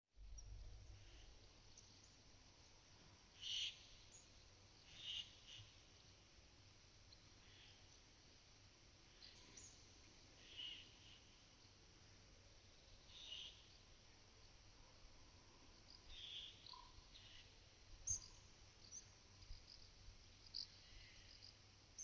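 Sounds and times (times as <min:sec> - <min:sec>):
small birds calling: 0:03.4 - 0:05.8, 0:09.1 - 0:11.5, 0:12.9 - 0:13.8, 0:15.8 - 0:22.0.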